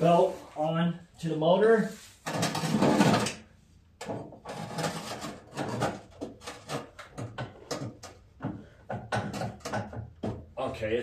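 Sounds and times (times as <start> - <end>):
metallic clicks scrapes and clunks: 2.2 - 8.4.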